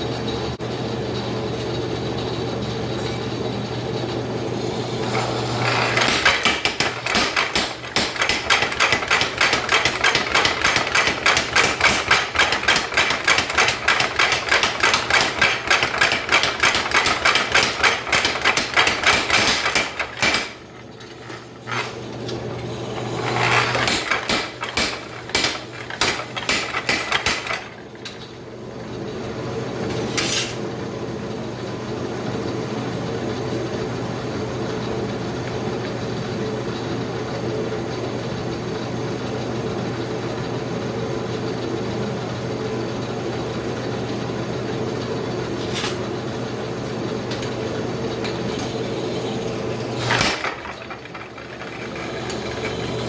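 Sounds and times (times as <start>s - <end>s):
power hammer motor running: 4.7s - 28.0s, 49.2s - 53.0s
power hammer blows: 22.8s - 27.8s.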